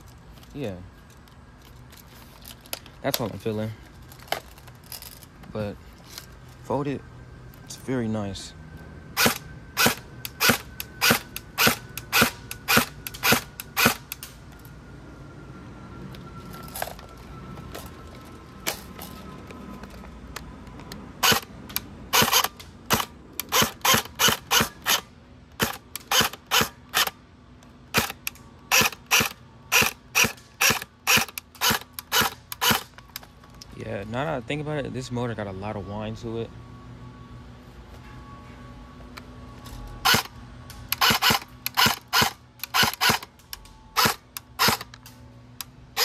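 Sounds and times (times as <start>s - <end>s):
airsoft rifle shots: 9.2s - 14.2s, 21.2s - 21.4s, 22.1s - 25.0s, 27.9s - 32.9s, 40.0s - 40.3s, 41.0s - 43.3s, 44.0s - 44.9s.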